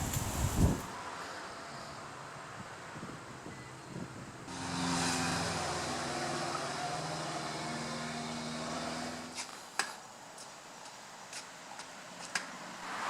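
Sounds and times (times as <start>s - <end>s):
vehicle engine humming: 0.0s - 1.0s.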